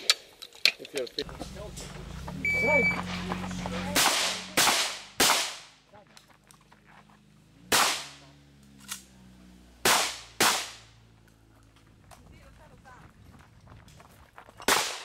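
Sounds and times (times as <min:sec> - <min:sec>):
shotgun shots: 0:03.8 - 0:05.8, 0:07.7 - 0:08.2, 0:09.8 - 0:10.9, 0:14.7 - 0:15.0.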